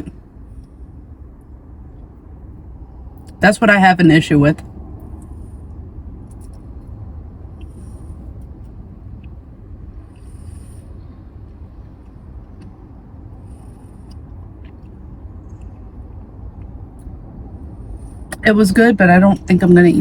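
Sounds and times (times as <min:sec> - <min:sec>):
low rumble inside a car: 0:00.0 - 0:20.0.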